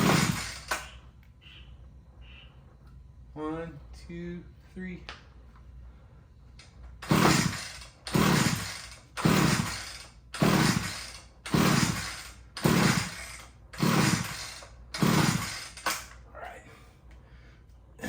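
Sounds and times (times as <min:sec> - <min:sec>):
pull starter rope whirring: 0:00.0 - 0:01.0, 0:07.0 - 0:16.2.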